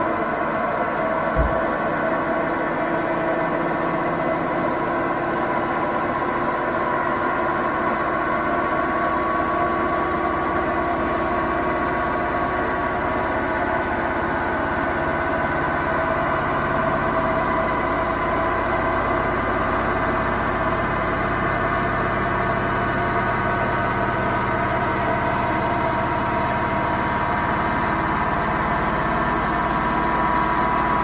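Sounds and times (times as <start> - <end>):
washing machine drum spinning: 1.4 - 1.9.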